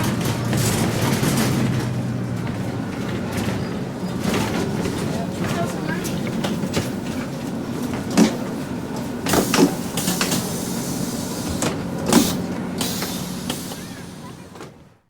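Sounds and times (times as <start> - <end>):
clatters and knocks: 0.0 - 8.5
bus engine humming: 0.0 - 15.0.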